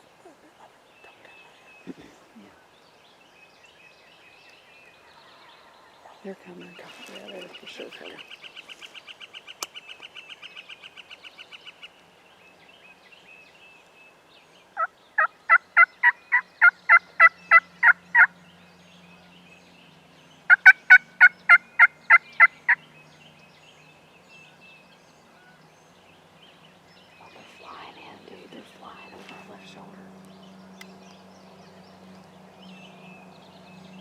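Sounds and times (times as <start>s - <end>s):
turkey yelping: 14.8s - 18.3s, 20.5s - 22.8s.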